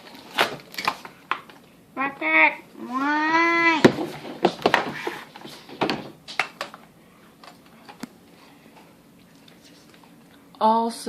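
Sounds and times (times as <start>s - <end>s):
cardboard knocks and rustling: 3.8s - 6.2s.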